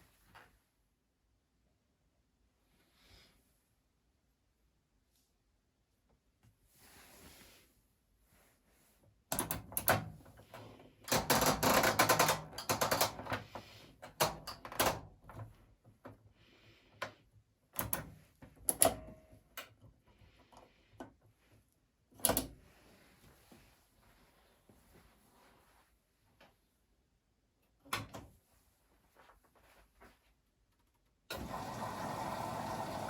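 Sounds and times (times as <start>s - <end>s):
washing machine clicks and clatter: 9.3s - 16.2s, 17.7s - 19.9s, 22.1s - 22.6s.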